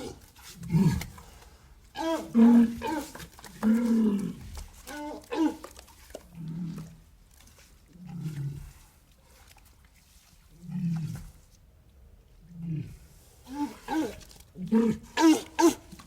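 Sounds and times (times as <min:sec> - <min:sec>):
low grunting growls: 0:00.0 - 0:01.3, 0:01.9 - 0:05.6, 0:06.3 - 0:07.1, 0:07.9 - 0:08.9, 0:10.6 - 0:11.4, 0:12.4 - 0:15.9.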